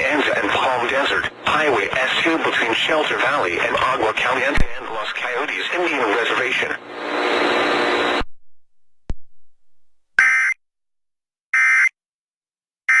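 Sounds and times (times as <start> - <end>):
radio hiss: 0.0 - 8.2.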